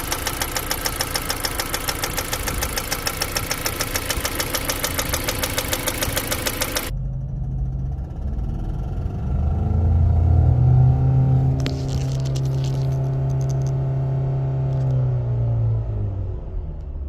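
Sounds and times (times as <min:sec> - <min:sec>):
car engine idling with ticking: 0:00.0 - 0:07.6
low engine hum: 0:00.0 - 0:17.0.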